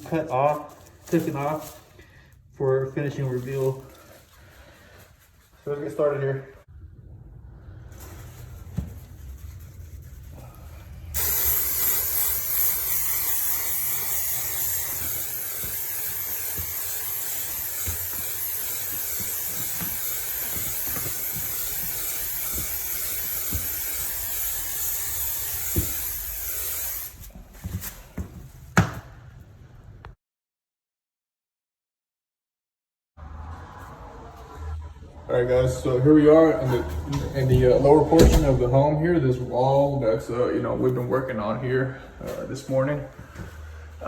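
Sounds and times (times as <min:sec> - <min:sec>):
aerosol spray hissing: 0:10.4 - 0:27.4.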